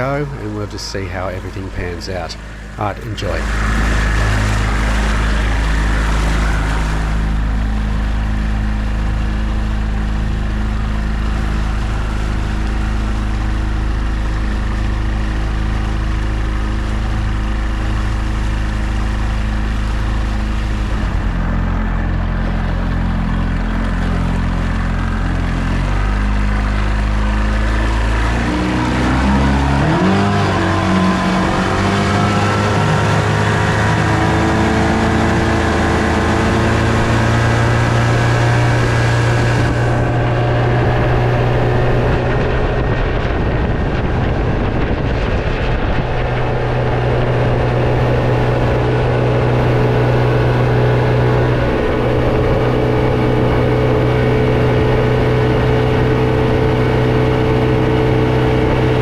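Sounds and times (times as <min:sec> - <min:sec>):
rushing water noise: 0:00.0 - 0:08.4, 0:23.7 - 0:58.8
outboard motor driving boat: 0:00.0 - 0:59.0.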